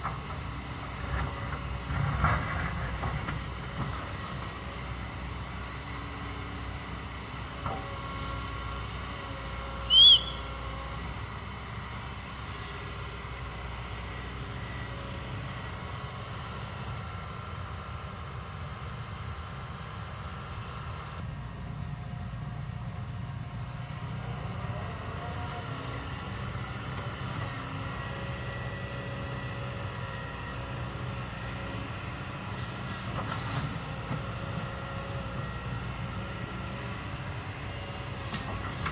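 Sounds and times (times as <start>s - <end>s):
excavator diesel engine running: 0.0s - 38.9s
loud high-pitched chirp: 9.9s - 10.4s.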